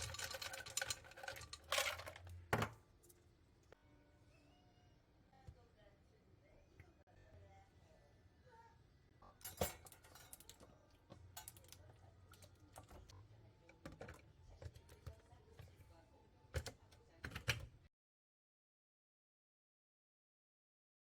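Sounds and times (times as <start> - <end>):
small objects clicking and knocking: 0.0 - 2.8.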